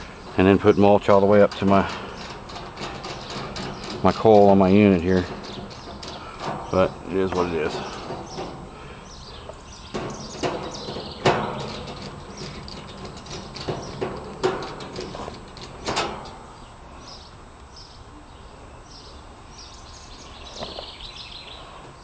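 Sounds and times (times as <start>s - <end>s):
sharp knocks and clatters: 0.0s - 16.6s.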